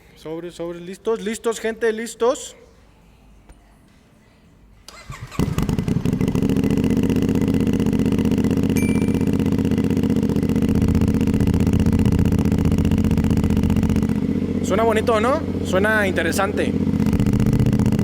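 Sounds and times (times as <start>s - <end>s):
motorcycle engine starting and idling: 4.9s - 18.0s.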